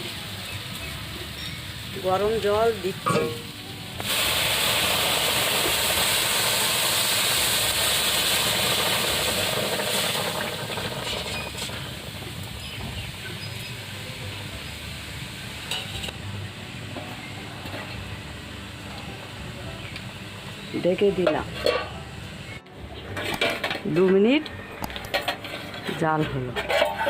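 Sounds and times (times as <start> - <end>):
vegetables sizzling in a pan: 0.0 - 16.2.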